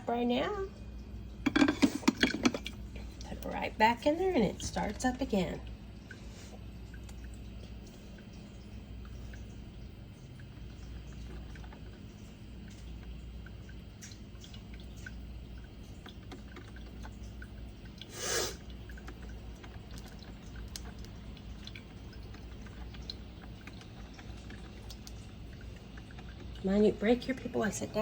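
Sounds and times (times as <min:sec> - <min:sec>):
steady low hum: 0:00.0 - 0:28.0
coffee dripping into carafe: 0:00.2 - 0:28.0
small ticks: 0:18.9 - 0:26.6.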